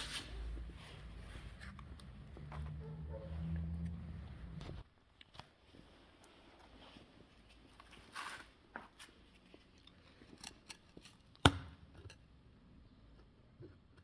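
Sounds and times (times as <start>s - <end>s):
metal parts and tools clicking: 9.8s - 12.3s.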